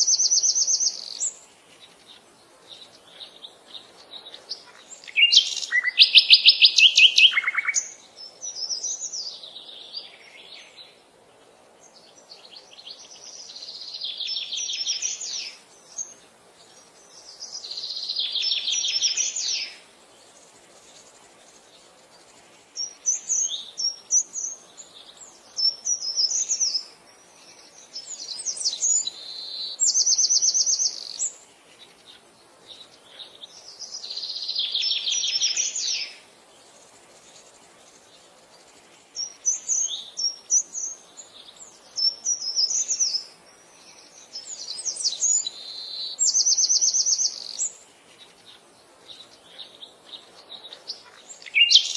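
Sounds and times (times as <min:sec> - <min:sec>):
faint steady background noise: 0:00.0 - 0:51.9
songbirds trilling: 0:00.0 - 0:51.9.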